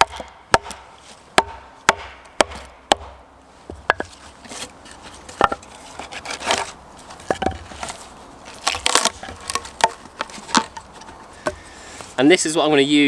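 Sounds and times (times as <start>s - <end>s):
axe chopping wood: 0.0s - 11.8s
wood cracking and splintering: 3.8s - 11.9s.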